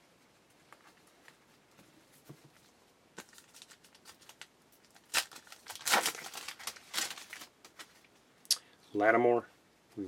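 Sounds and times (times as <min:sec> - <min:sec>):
wrapper crinkling and tearing: 0:03.2 - 0:08.1.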